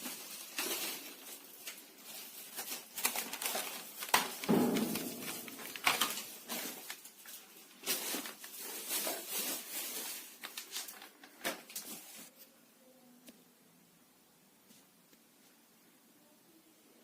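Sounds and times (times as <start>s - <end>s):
rustling: 0.0s - 12.6s.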